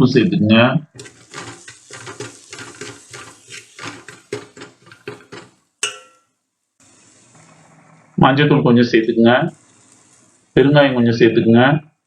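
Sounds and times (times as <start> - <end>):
metal clank: 1.0 - 6.3
metal spoon scraping pan: 1.0 - 6.3.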